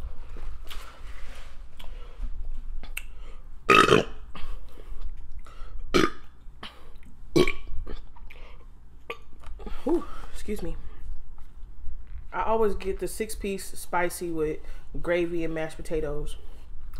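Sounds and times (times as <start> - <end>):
woman burping loudly: 3.7 - 4.3, 5.9 - 6.3, 7.3 - 8.1.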